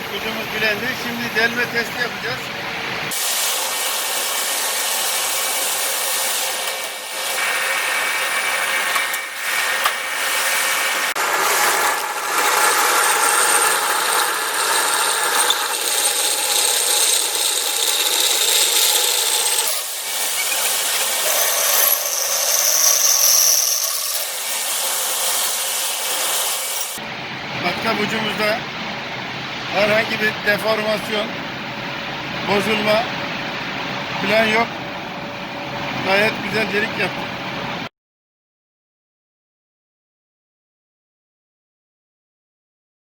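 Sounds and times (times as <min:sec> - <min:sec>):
electric drill boring a hole: 0:03.2 - 0:27.0.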